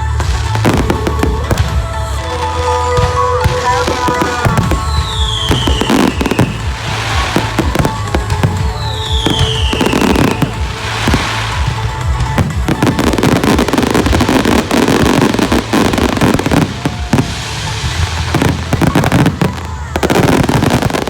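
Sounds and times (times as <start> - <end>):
fireworks bangs and crackles: 0.0 - 21.0
music: 0.0 - 21.0
falling firework whistle: 3.1 - 11.8.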